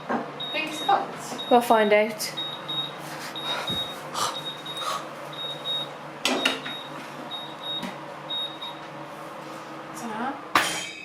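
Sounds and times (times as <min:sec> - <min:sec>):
kitchen timer beeping: 0:00.4 - 0:08.8.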